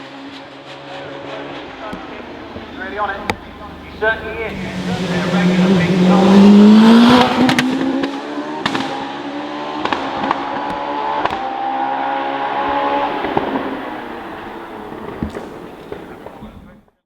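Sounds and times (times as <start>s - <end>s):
race car engine running hard: 0.0s - 16.7s
exhaust pops and cracks: 1.6s - 7.8s, 12.4s - 16.8s.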